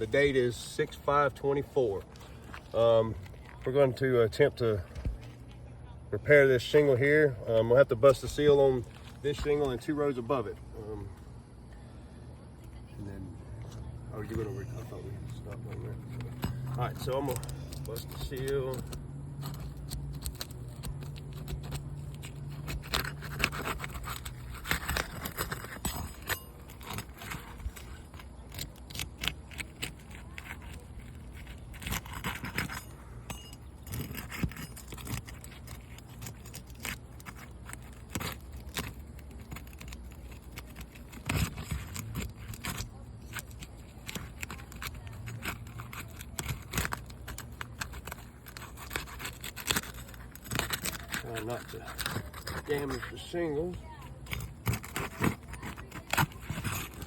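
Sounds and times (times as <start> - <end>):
faint low hum: 0.0 - 57.0
roof shingles being pried loose: 15.3 - 57.0.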